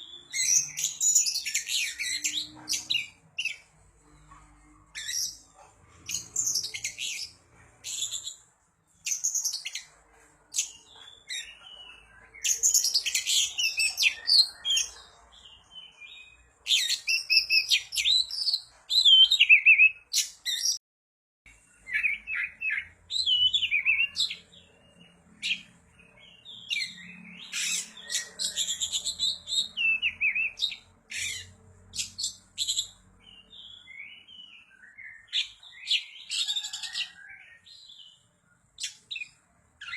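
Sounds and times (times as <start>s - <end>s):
bird singing whistles and chatter: 21.8s - 24.5s.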